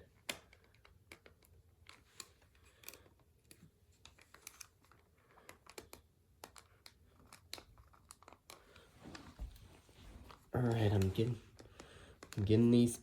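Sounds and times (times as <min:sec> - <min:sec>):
plastic toy parts clicking: 0:00.2 - 0:08.6.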